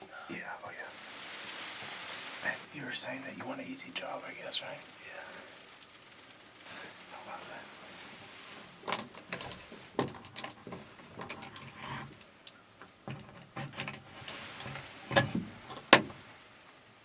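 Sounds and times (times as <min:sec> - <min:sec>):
handling clicks and knocks: 0:08.8 - 0:16.2.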